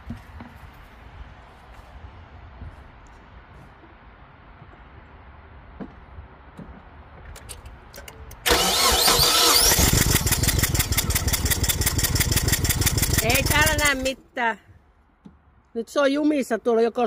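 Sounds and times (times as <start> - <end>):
car engine cranking and running: 8.4 - 14.2.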